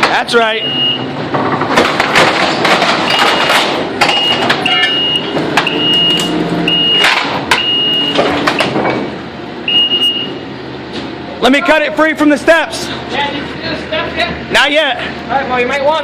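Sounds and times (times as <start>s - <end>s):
diesel engine running: 0.0s - 16.0s
reverse beeper: 3.1s - 8.2s, 9.7s - 10.4s.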